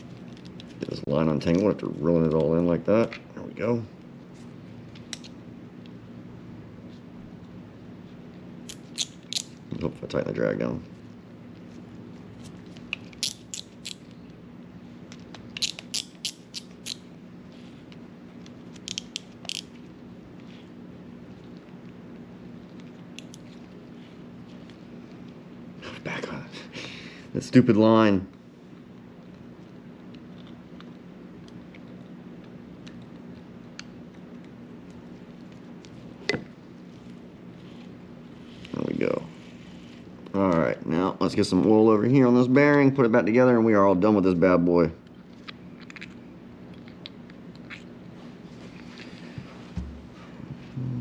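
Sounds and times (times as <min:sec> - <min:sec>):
faint steady hum: 0:00.0 - 0:51.0
fishing reel clicks and handling: 0:18.9 - 0:19.7.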